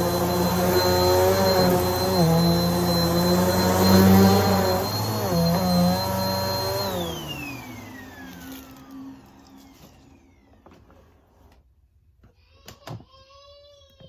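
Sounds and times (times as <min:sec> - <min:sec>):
vacuum cleaner motor spinning down: 0:00.0 - 0:11.2.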